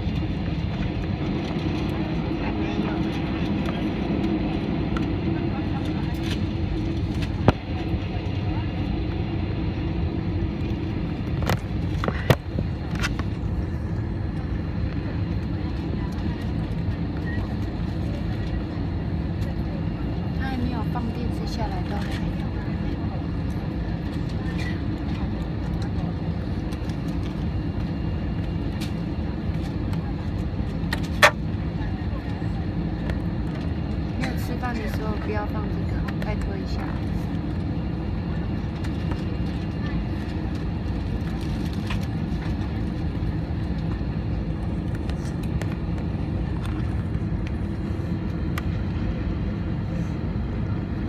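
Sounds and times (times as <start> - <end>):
jet engines rumbling in cabin: 0.0 - 51.0.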